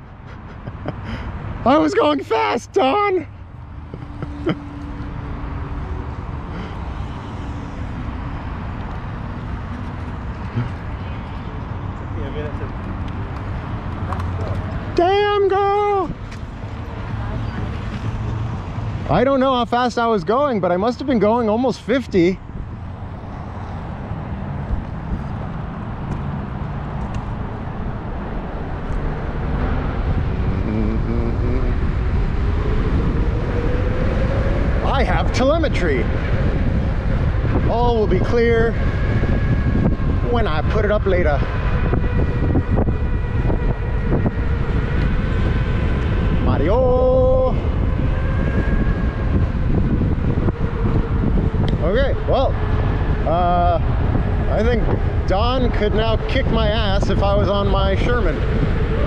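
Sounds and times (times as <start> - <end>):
wind buffeting microphone: 20.9 - 59.0.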